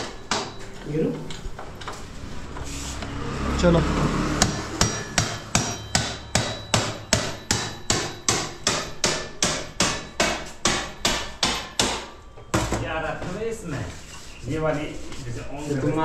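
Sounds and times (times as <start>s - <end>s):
hammer striking with ringing: 0.0s - 2.0s, 4.2s - 13.0s.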